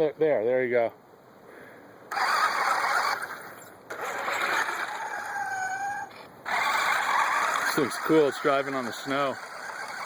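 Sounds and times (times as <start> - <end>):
toy truck electric motor whirring: 2.1 - 10.0.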